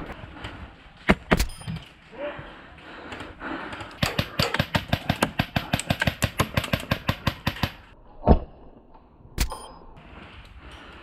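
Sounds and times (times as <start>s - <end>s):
airsoft rifle rapid firing: 3.8s - 7.9s
sharp click: 9.4s - 9.8s.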